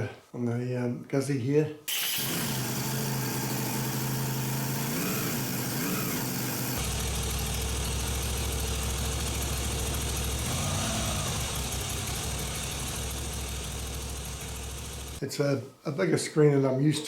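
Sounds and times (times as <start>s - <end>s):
motorcycle engine idling: 5.2s - 15.2s.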